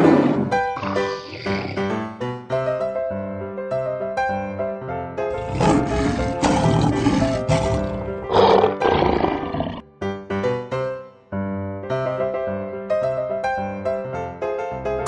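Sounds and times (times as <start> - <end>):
big cat roaring: 0.0 - 1.9, 5.3 - 9.8
keyboard background music: 0.0 - 15.0.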